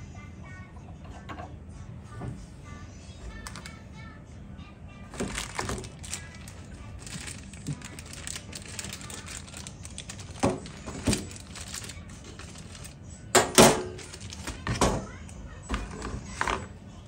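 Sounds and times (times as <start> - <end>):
objects and packaging handled: 3.4 - 3.7, 5.1 - 16.7.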